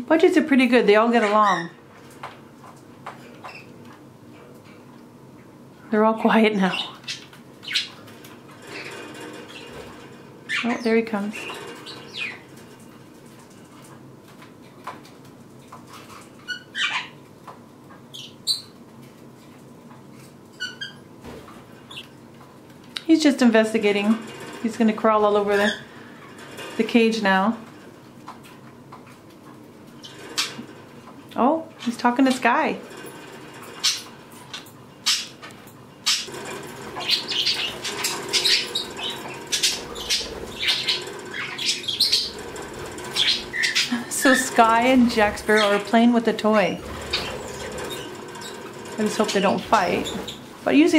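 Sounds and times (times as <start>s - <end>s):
budgerigars chirping and squawking: 1.2s - 1.8s, 6.6s - 12.6s, 16.0s - 17.2s, 25.3s - 26.4s, 33.8s - 34.2s, 35.0s - 35.4s, 36.0s - 46.1s, 46.8s - 50.5s.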